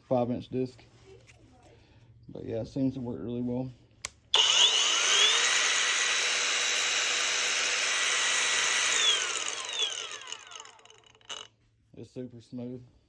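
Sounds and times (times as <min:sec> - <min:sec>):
angle grinder whine: 0:04.4 - 0:11.5.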